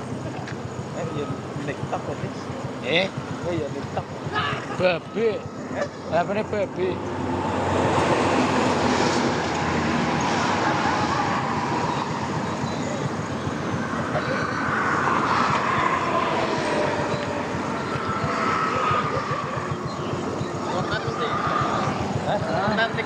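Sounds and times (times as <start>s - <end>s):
heavy engine noise: 0.0s - 23.0s
whine sliding down in pitch: 7.2s - 22.3s.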